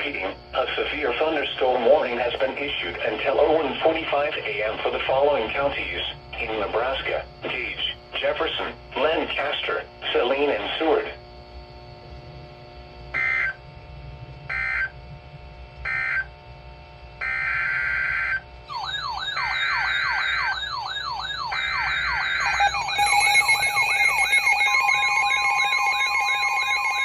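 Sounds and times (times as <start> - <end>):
steady alarm tone: 0.0 - 27.0
wailing siren-like alert: 13.2 - 13.6, 14.5 - 15.0, 15.8 - 16.3, 17.2 - 27.0
buzzy digital data bursts: 17.2 - 27.0.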